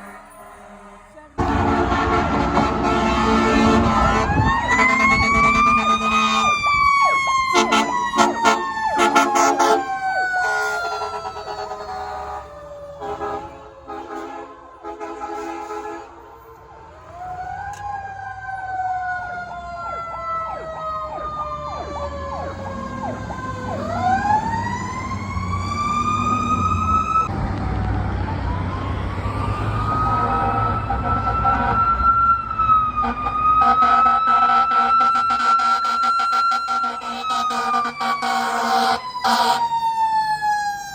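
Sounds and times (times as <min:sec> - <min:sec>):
air horn blasts: 0:00.0 - 0:06.7, 0:07.5 - 0:16.3, 0:33.0 - 0:39.6
fast-warbling siren: 0:00.0 - 0:13.5, 0:16.3 - 0:40.9
mechanical siren wailing: 0:00.0 - 0:14.2, 0:16.3 - 0:40.9
diesel engine rumbling: 0:00.0 - 0:39.7
horn chord: 0:00.6 - 0:05.8.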